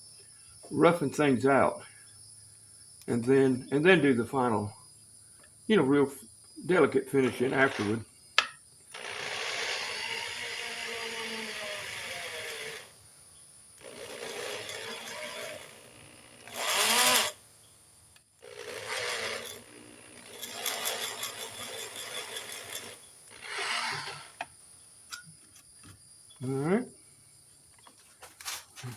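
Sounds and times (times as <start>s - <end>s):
handheld power tool cutting wood: 7.1s - 13.0s, 13.8s - 17.4s, 18.4s - 25.3s.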